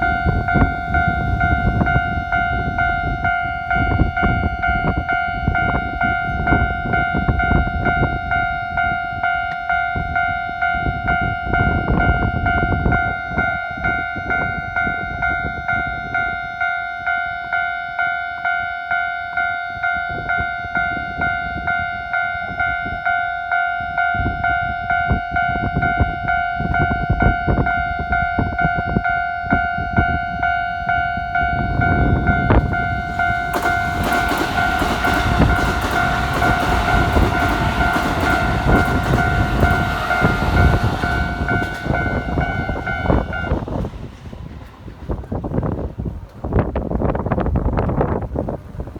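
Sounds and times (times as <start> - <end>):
level crossing warning bell: 0.0 - 45.6
train rumble and wheel noise: 0.0 - 48.9.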